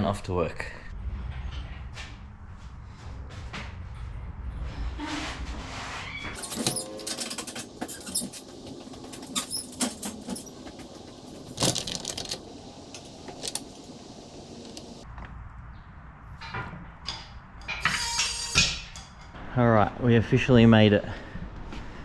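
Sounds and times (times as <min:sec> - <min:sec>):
engine parts clicking and knocking: 0:06.4 - 0:15.0.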